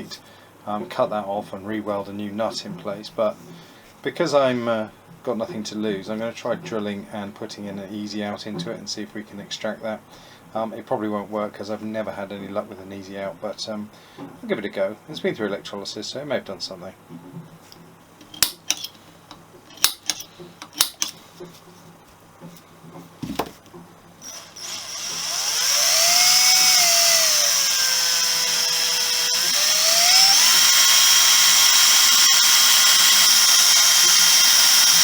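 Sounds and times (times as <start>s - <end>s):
sharp clicks and knocks: 18.2s - 21.5s
electric drill drilling into metal: 24.2s - 35.0s.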